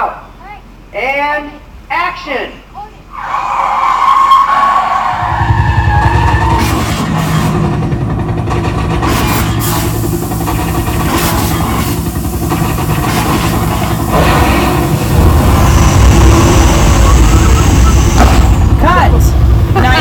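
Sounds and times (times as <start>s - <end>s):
car engine rumble: 5.1s - 20.0s
sharp bangs: 5.2s - 19.7s
high wavering squeal: 14.6s - 18.6s.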